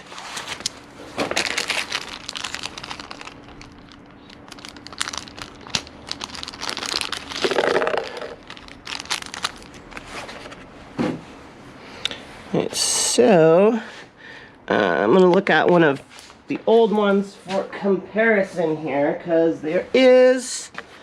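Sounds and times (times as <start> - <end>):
plastic packaging crinkling: 0.0 - 10.6.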